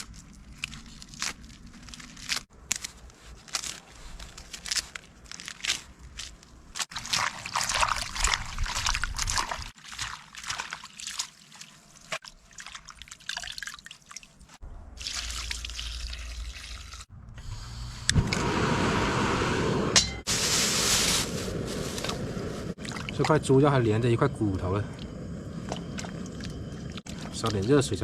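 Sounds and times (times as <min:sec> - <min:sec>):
water running and trickling: 0:06.9 - 0:17.1.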